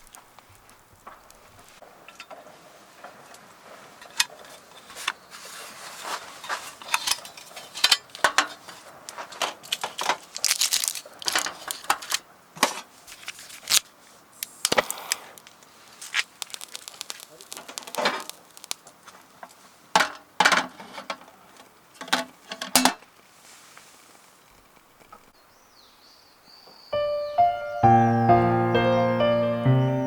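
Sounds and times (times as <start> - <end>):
crinkling and rustling: 0.0 - 25.4
camping gear clinking and knocking: 4.0 - 13.8, 20.0 - 23.1.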